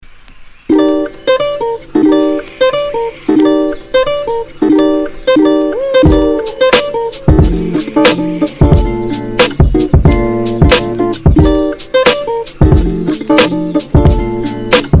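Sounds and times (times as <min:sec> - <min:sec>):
plucked string instrument chords: 0:00.7 - 0:15.0
percussion hits: 0:06.0 - 0:15.0.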